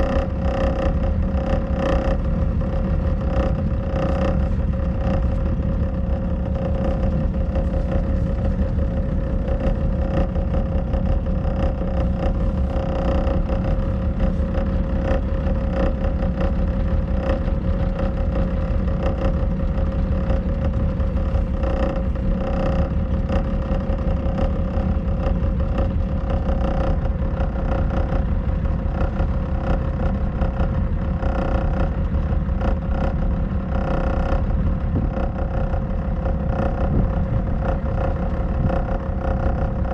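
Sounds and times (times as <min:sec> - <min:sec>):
boat engine droning: 0:00.0 - 0:39.9.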